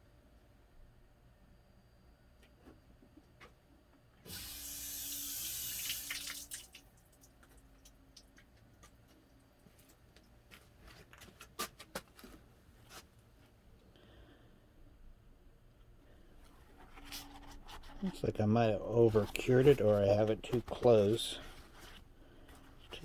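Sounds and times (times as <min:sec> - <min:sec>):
liquid pouring: 0:05.3 - 0:08.0.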